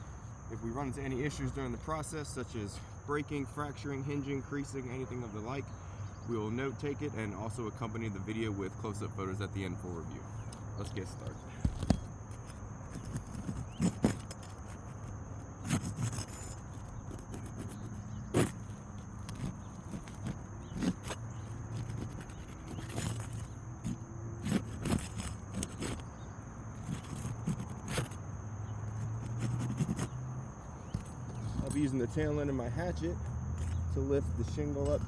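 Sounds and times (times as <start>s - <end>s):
tools scraping shingles: 7.6s - 35.0s.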